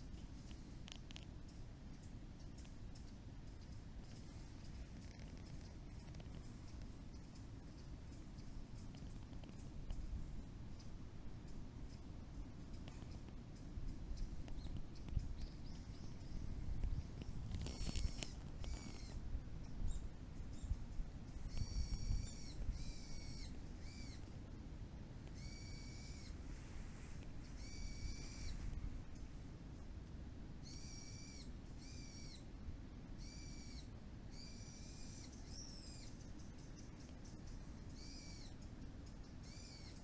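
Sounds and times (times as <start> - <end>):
bird calling: 14.2 - 19.3, 19.9 - 24.3, 25.3 - 26.4, 27.4 - 29.4, 30.6 - 32.5, 33.2 - 40.0.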